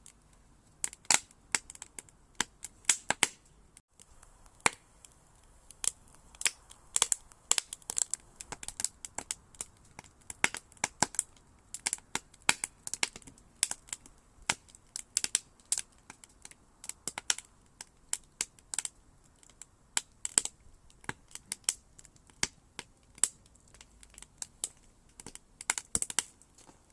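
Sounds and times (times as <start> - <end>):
campfire crackling and popping: 0.0 - 26.9.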